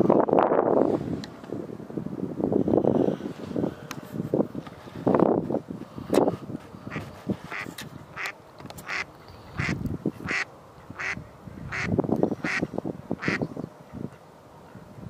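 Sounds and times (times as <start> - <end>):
duck quacking: 6.9 - 13.4.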